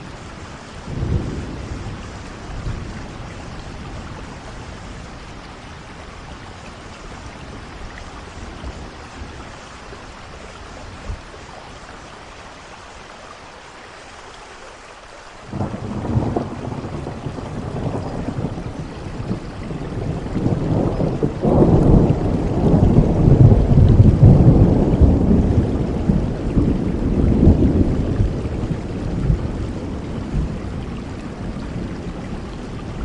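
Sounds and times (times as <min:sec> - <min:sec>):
steady rain: 0:00.0 - 0:33.0
thunderclap rumbling: 0:00.8 - 0:05.2, 0:15.5 - 0:33.0.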